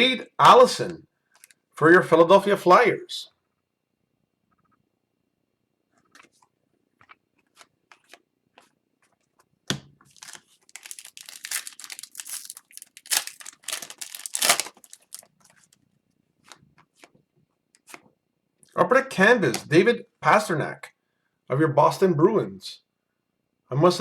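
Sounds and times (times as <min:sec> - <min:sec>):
wrapper tearing and crinkling: 0:10.1 - 0:15.8.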